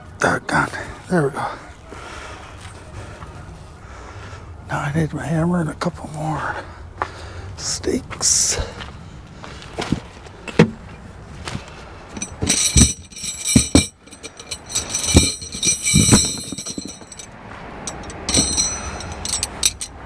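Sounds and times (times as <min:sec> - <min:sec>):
metal tent stakes clinking: 0:09.8 - 0:20.0.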